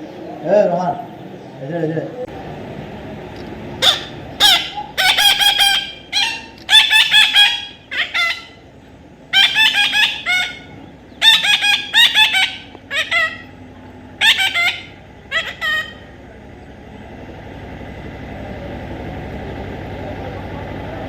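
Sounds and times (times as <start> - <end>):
parrot calling: 3.8 - 16.3.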